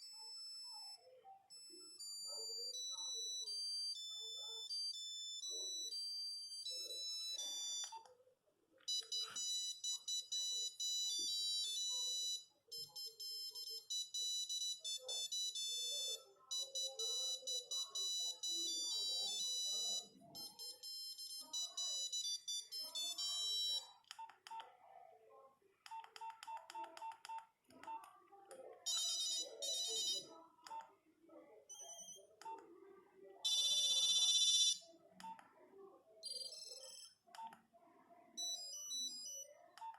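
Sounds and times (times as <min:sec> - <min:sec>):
mobile phone beeping ringtones: 0:00.0 - 0:08.1, 0:08.9 - 0:24.1, 0:28.9 - 0:30.8, 0:31.7 - 0:32.3, 0:33.4 - 0:35.4, 0:36.2 - 0:37.5, 0:38.4 - 0:39.5.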